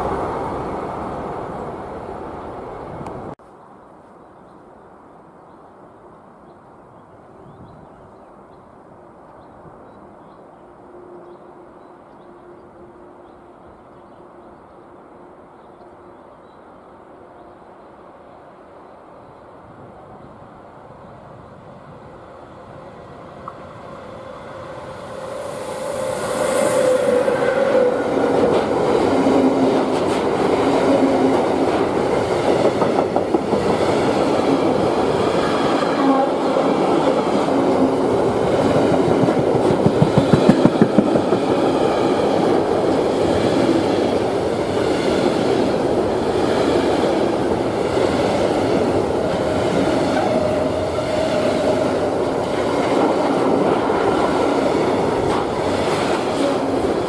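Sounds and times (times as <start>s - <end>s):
freight train passing: 0.0s - 3.4s, 8.4s - 57.0s
train wheels clicking over rail joints: 28.3s - 35.8s, 38.4s - 42.1s.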